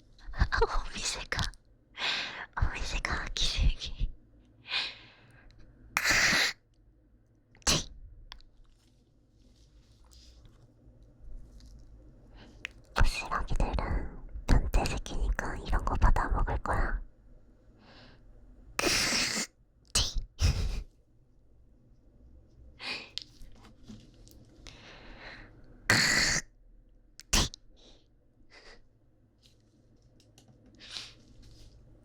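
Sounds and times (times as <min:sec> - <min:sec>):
spitting puff: 0:06.0 - 0:06.6, 0:07.7 - 0:07.9, 0:18.8 - 0:20.8, 0:25.9 - 0:26.4, 0:27.2 - 0:27.6
throat-clearing rasp: 0:06.0 - 0:06.6, 0:18.8 - 0:20.6, 0:25.9 - 0:26.4, 0:27.2 - 0:27.6.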